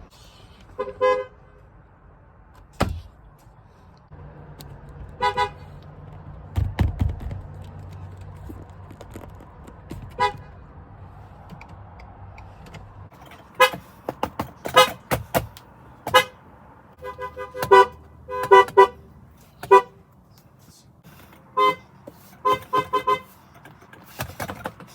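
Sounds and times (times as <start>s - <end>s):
car horn honking: 0.8s - 1.7s, 5.1s - 5.7s, 10.1s - 10.5s, 13.5s - 13.9s, 14.7s - 15.2s, 16.0s - 16.4s, 17.0s - 20.0s, 21.5s - 23.4s
loud thumps: 6.4s - 7.7s.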